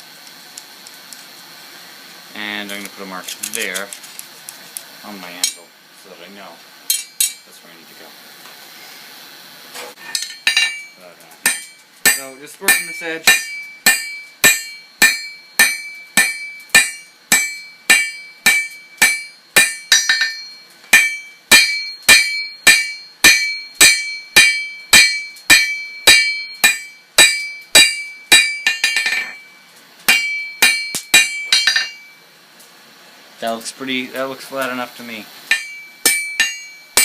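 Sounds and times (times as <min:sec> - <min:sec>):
hammer striking steel on anvil: 0:06.9 - 0:07.5, 0:10.0 - 0:32.2, 0:35.5 - 0:37.0.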